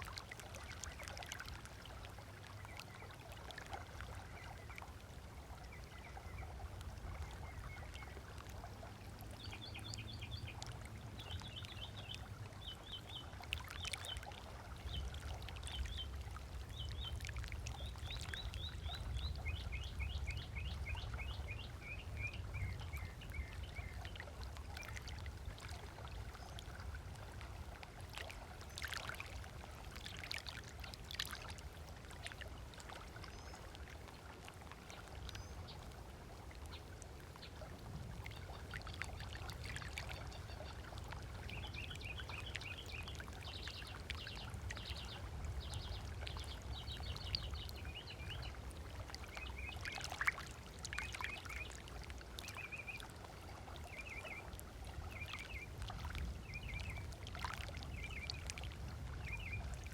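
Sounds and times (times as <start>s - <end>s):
light water splashes: 0.0s - 59.9s
small waves lapping on beach: 0.0s - 59.9s
songbird chirping: 9.3s - 26.9s.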